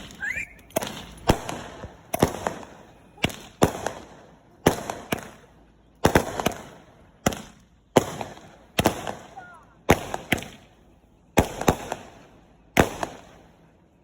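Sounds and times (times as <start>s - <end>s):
firework cake bangs: 0.0s - 5.4s, 6.0s - 10.6s, 11.4s - 13.4s.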